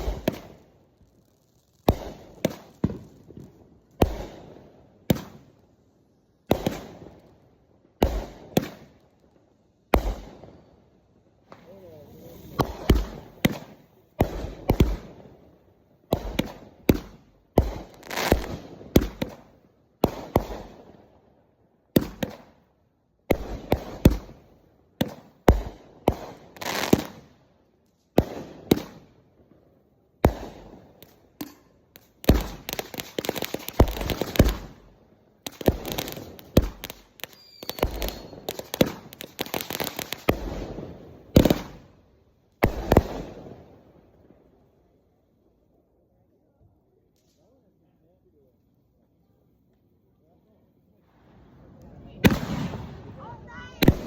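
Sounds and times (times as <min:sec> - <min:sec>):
fireworks bangs and crackling: 0:00.0 - 0:05.8, 0:06.4 - 0:21.3, 0:21.9 - 0:22.6, 0:23.2 - 0:44.6, 0:51.0 - 0:54.0.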